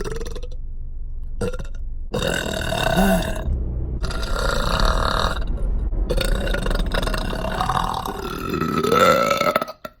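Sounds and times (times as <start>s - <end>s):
long burp: 1.4s - 5.3s.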